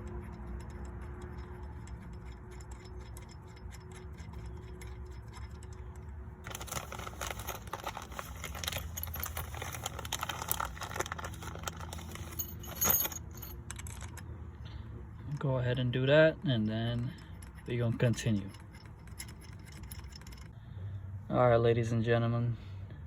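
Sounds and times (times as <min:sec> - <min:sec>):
small metal hardware clinking: 0:00.0 - 0:14.3, 0:16.9 - 0:20.6.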